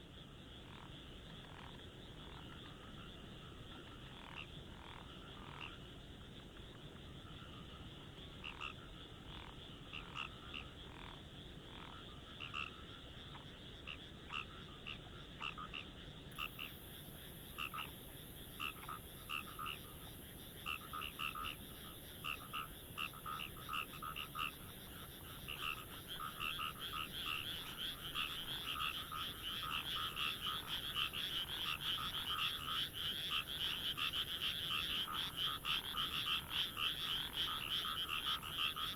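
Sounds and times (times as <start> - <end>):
frogs croaking: 0.5 - 38.9
steady high hiss: 16.4 - 31.4.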